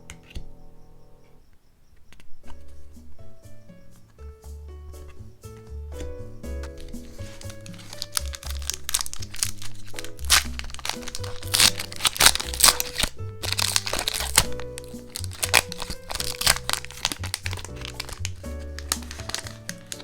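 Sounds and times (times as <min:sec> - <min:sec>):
background music: 0:02.4 - 0:20.0
foil wrappers crinkling: 0:06.6 - 0:20.0.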